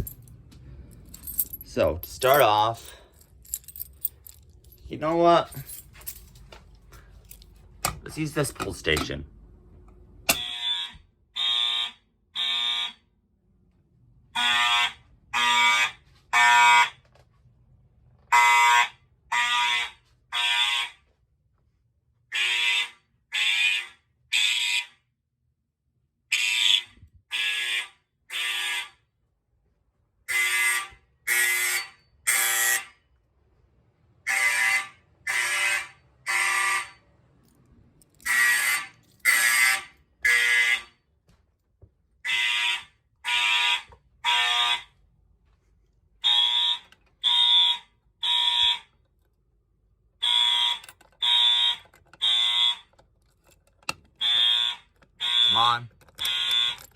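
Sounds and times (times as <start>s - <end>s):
fire alarm pull station click: 10.3s - 11.0s, 50.2s - 56.9s
fire alarm horns blasting: 10.3s - 13.2s, 14.3s - 17.1s, 18.3s - 21.2s, 22.3s - 25.0s, 26.3s - 29.1s, 30.2s - 33.0s, 34.2s - 37.1s, 38.2s - 41.0s, 42.2s - 45.0s, 46.2s - 49.0s, 50.2s - 53.0s, 54.1s - 56.9s.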